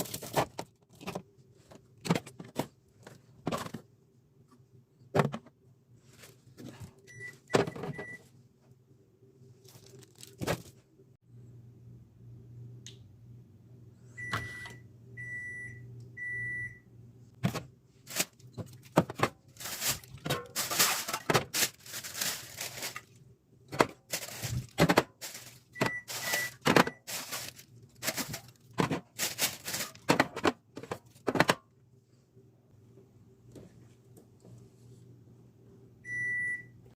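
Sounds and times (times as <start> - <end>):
food containers clinking and rustling: 0.0 - 3.9, 17.4 - 31.7
low steady hum: 0.0 - 36.9.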